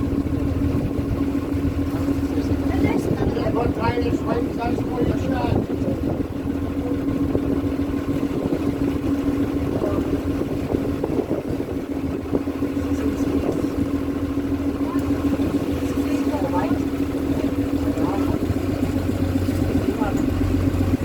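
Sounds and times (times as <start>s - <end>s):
boat engine droning: 0.0s - 21.0s
wind and water rushing: 0.0s - 21.0s.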